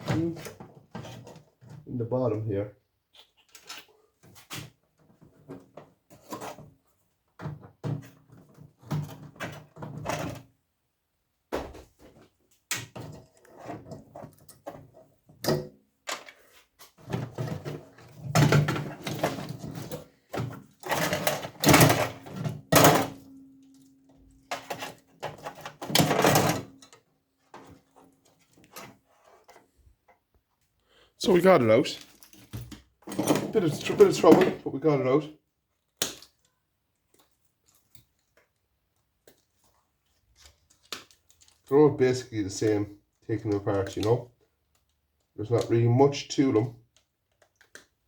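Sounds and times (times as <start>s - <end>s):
metal clattering and scraping: 17.1s - 23.3s.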